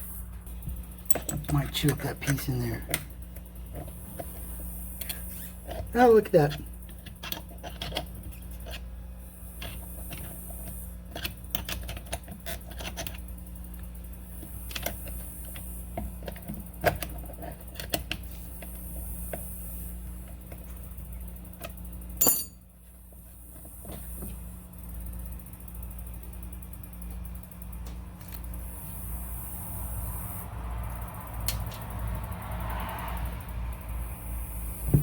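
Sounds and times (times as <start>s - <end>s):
steady low hum: 0.0s - 32.5s
hand tools clicking and rattling: 21.6s - 22.6s.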